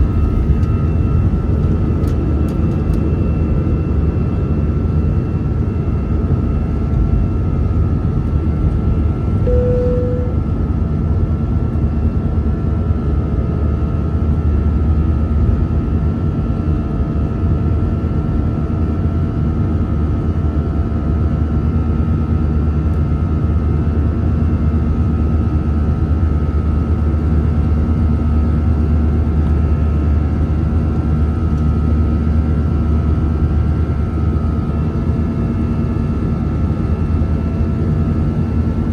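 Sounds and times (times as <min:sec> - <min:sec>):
jet engines rumbling and whining: 0:00.0 - 0:08.8
single-pitched tone: 0:09.5 - 0:10.6.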